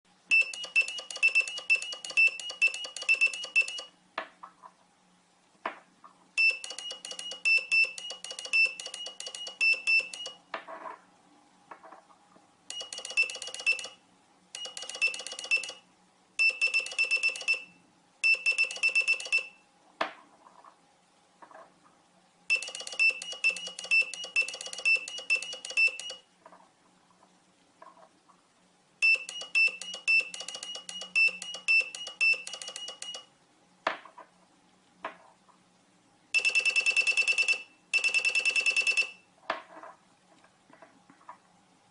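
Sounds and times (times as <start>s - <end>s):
sharp clicks: 6.4s - 10.4s, 14.6s - 15.8s, 29.1s - 33.3s.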